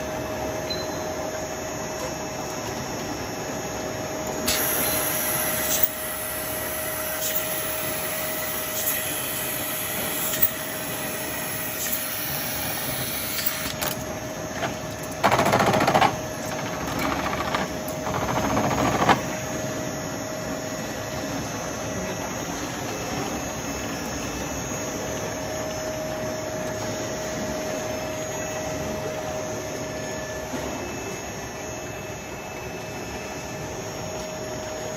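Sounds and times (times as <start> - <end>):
machine motors whining: 1.4 - 34.9
mechanical clatter: 14.6 - 19.3.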